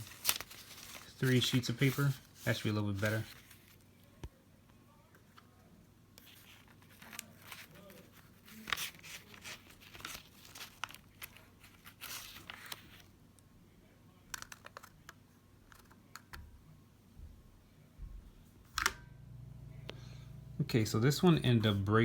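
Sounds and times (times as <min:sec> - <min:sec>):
paper rustling and crinkling: 0:00.0 - 0:03.9, 0:06.2 - 0:13.1.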